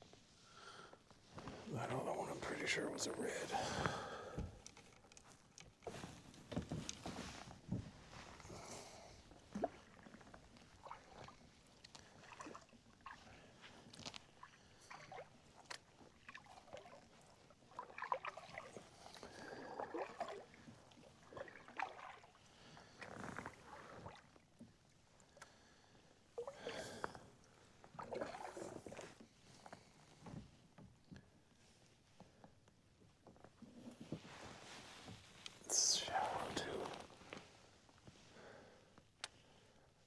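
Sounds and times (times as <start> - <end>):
paddle strokes splashing water: 16.1 - 22.4, 28.0 - 29.2.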